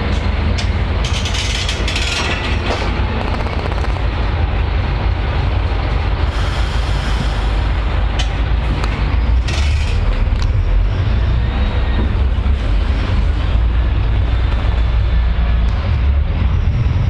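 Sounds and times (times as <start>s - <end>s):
vehicle rumbling in motion: 0.0s - 17.0s.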